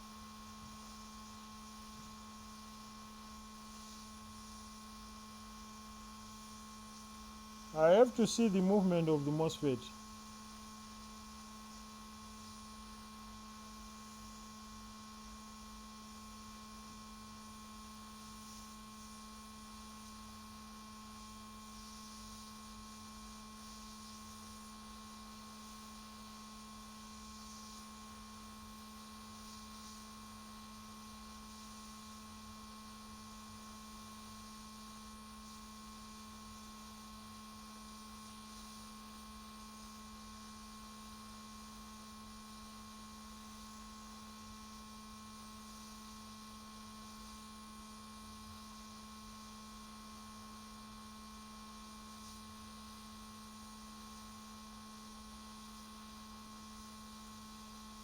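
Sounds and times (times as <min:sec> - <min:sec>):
electrical hum: 0:07.8 - 0:09.9
faint hiss: 0:07.8 - 0:09.9.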